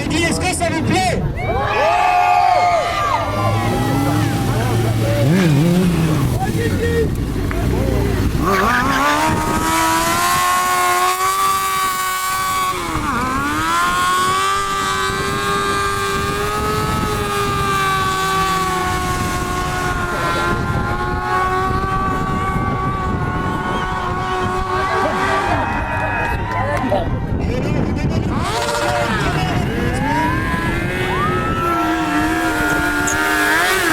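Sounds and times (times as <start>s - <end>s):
motorcycle engine at high revs: 3.3s - 25.9s, 28.1s - 33.9s.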